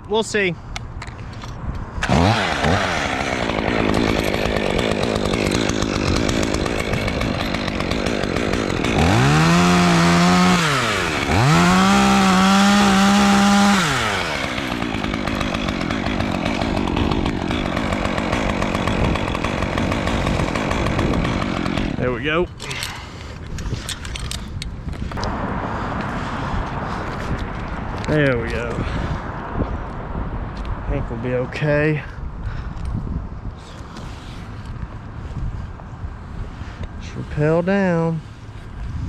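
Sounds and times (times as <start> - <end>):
chainsaw revving: 2.0 - 23.2.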